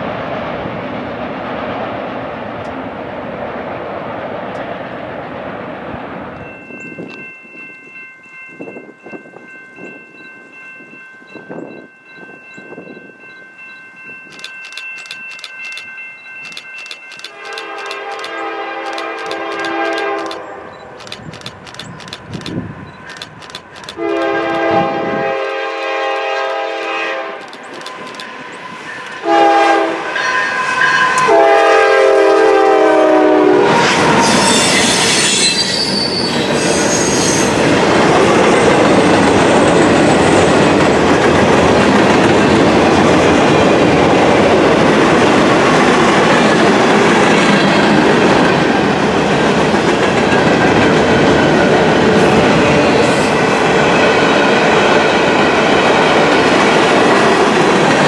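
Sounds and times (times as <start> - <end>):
train wheels rumbling: 14.2 - 58.0
locomotive air horn: 17.3 - 20.4, 24.0 - 27.4, 29.1 - 37.6
high wheel squeal: 33.7 - 37.8.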